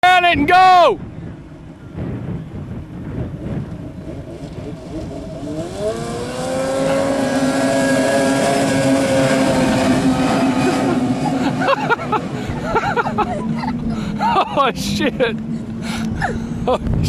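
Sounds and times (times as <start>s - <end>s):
snowmobile engine revving: 3.4s - 16.8s.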